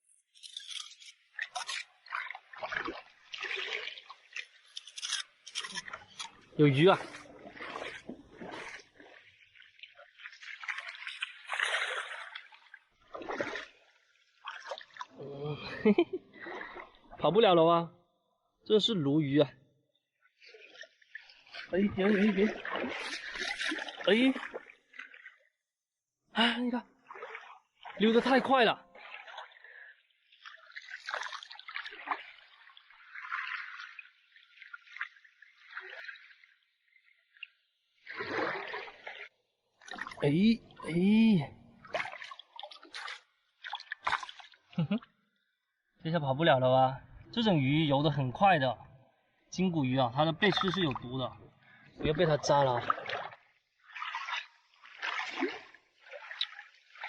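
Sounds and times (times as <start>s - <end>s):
shallow seawater splashing: 0.7s - 17.1s, 20.4s - 25.5s, 27.0s - 40.9s, 41.6s - 44.8s, 50.4s - 57.0s.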